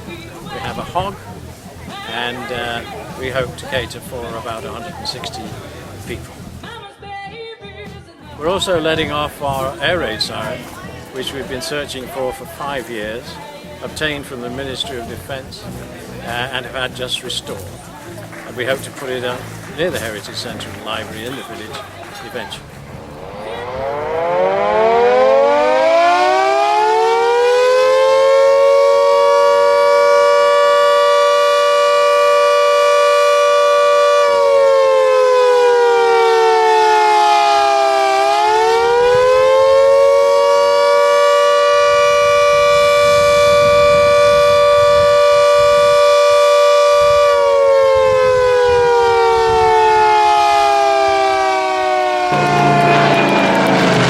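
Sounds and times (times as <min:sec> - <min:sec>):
air raid siren wailing: 0:22.6 - 0:54.0.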